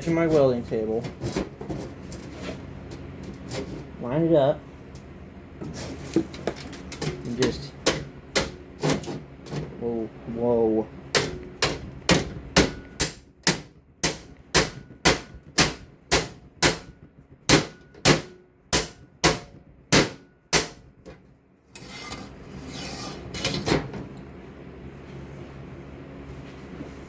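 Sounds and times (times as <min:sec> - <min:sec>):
scraping and rustling: 0:00.0 - 0:04.0, 0:05.6 - 0:07.6, 0:21.7 - 0:27.0
hammer striking metal strip: 0:07.8 - 0:09.1, 0:11.2 - 0:16.9, 0:17.5 - 0:20.9.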